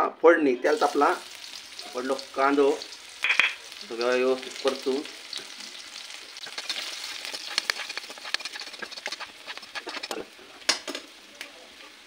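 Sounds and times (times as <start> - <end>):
onion sizzling in oil: 0.6 - 12.0
spoon scraping pan: 3.2 - 10.9.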